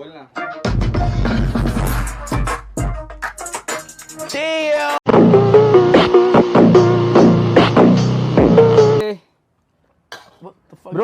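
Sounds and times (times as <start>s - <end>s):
hip-hop beat with bass: 0.4s - 9.0s.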